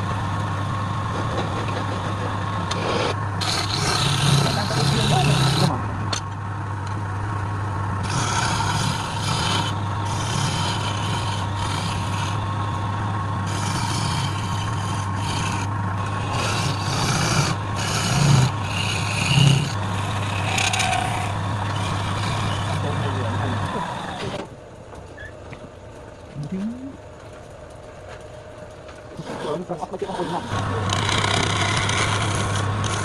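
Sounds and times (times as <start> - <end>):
wood lathe motor humming: 0.0 - 6.2, 6.8 - 24.5, 29.1 - 33.0
turning tool scraping wood: 1.3 - 5.8, 8.0 - 12.5, 13.4 - 24.4, 29.1 - 33.0.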